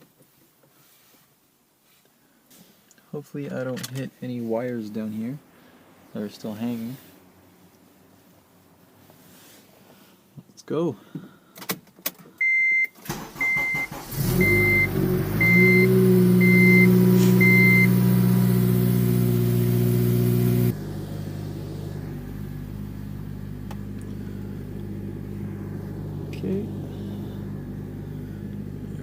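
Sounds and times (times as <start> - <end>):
dashboard warning chime beeping: 12.4 - 18.7
car engine idling: 13.1 - 29.0.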